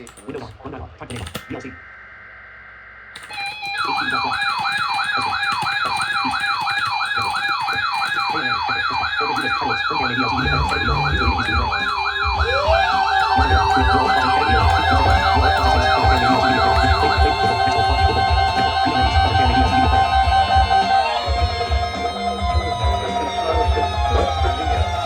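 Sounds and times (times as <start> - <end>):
electronic yelp siren: 1.4 - 25.0
music with low beat: 10.4 - 25.0.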